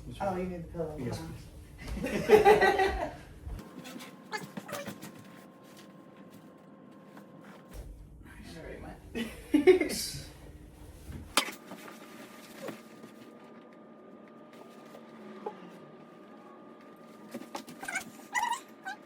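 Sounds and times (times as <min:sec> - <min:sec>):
cat meowing: 0:17.8 - 0:19.0.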